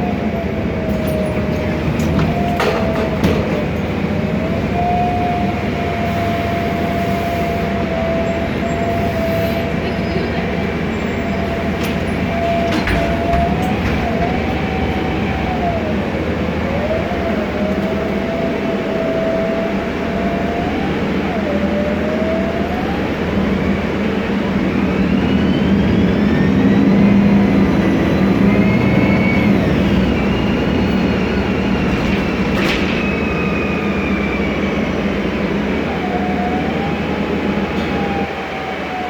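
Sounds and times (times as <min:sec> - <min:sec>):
gearbox whine: 0:00.0 - 0:38.8
bus engine rumble: 0:00.0 - 0:39.0.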